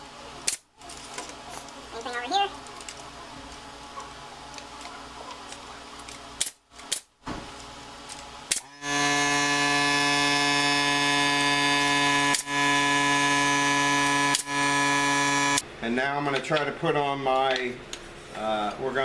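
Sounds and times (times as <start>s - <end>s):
air compressor motor humming: 8.6s - 15.6s.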